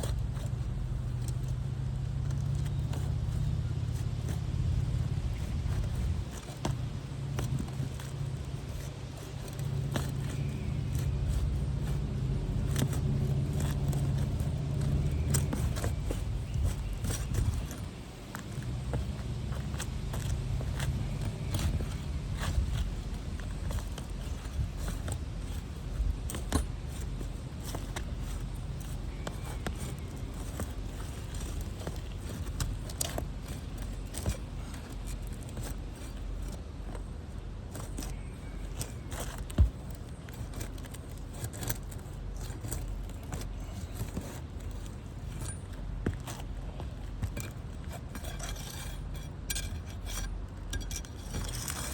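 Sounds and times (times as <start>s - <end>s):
clicks and scrapes on roof shingle: 0.0s - 51.9s
steady low rumble: 0.0s - 51.9s.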